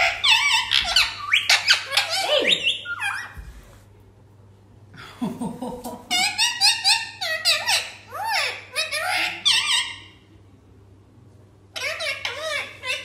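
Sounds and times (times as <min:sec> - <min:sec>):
parrot chirping and squawking: 0:00.0 - 0:03.5, 0:06.1 - 0:10.2, 0:11.7 - 0:13.0.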